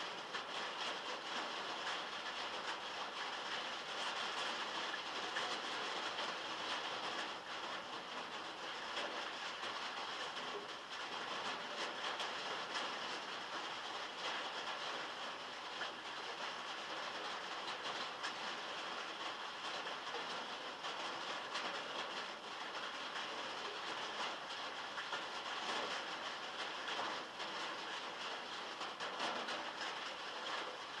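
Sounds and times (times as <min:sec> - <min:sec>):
heavy rain on metal: 0:00.0 - 0:31.0.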